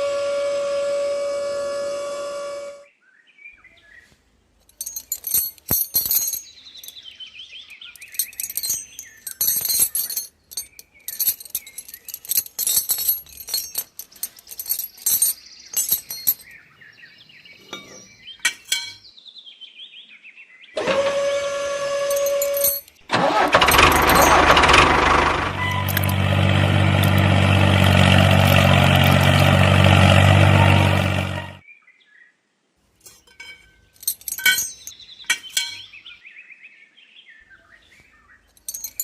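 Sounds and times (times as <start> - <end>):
high-pitched chirps and clinks: 4.6 - 16.8, 17.6 - 19.1, 22.1 - 24.8, 25.6 - 26.3, 26.9 - 30.3, 33.1 - 36.1, 38.4 - 39.0.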